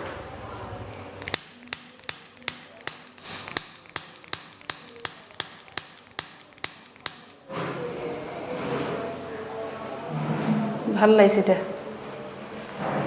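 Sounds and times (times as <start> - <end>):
rapid sharp clicks: 0.9 - 7.4.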